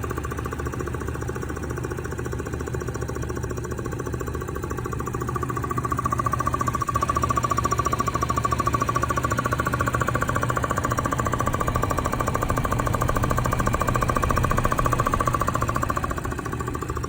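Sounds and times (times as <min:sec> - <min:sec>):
engine running with thumping: 0:00.0 - 0:17.0.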